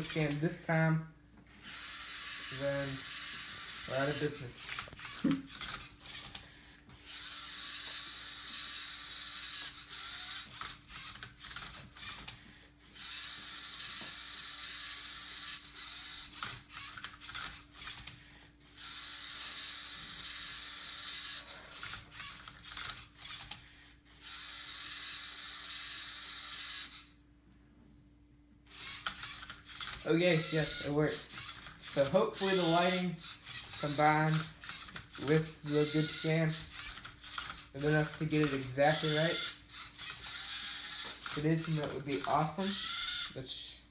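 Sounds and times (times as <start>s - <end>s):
robot motors whirring: 1.5s - 27.2s, 28.7s - 43.4s
mechanical clicks: 36.6s - 43.2s.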